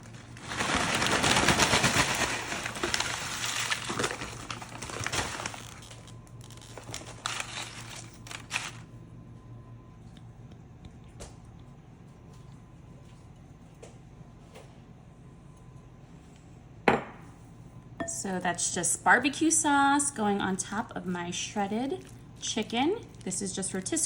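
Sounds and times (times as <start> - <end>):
tortilla chips crackling: 0.0 - 8.9, 21.4 - 24.0.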